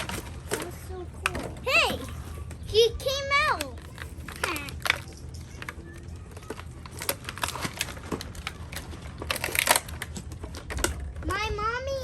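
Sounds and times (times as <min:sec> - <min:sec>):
plastic packaging crinkling: 0:03.6 - 0:11.2.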